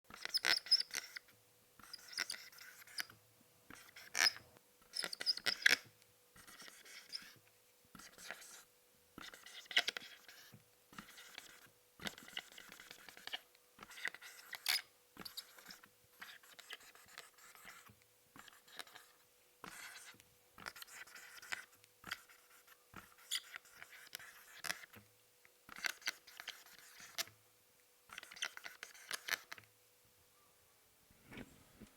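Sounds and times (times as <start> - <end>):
marker writing on whiteboard: 0.1 - 7.4, 8.0 - 25.0, 25.7 - 27.3, 28.1 - 29.6.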